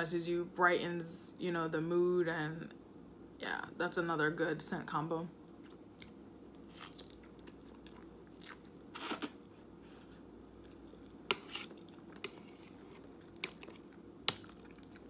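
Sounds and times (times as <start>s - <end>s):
wet chewing: 5.6s - 9.4s, 10.6s - 15.0s.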